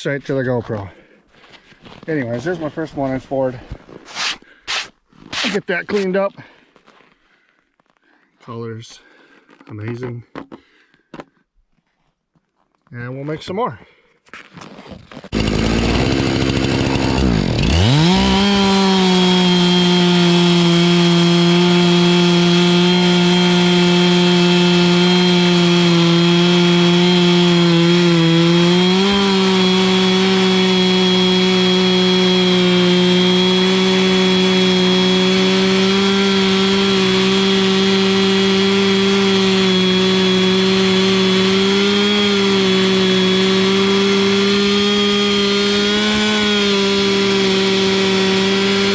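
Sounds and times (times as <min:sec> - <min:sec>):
chainsaw cutting wood: 0:04.1 - 0:06.2, 0:15.3 - 0:48.9.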